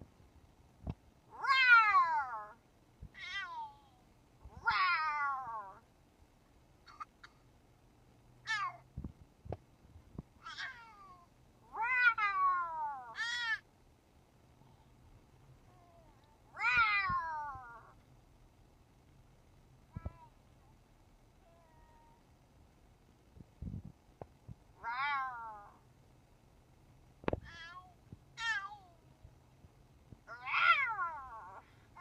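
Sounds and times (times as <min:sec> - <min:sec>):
cat meowing: 0:01.3 - 0:02.6, 0:03.2 - 0:03.8, 0:04.5 - 0:05.8, 0:08.5 - 0:08.8, 0:10.4 - 0:13.6, 0:15.7 - 0:18.0, 0:24.8 - 0:25.8, 0:27.4 - 0:29.0, 0:30.3 - 0:32.0.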